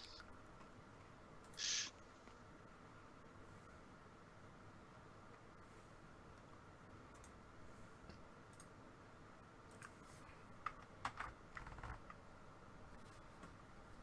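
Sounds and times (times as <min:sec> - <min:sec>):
computer keyboard clicks: 0:10.6 - 0:12.2.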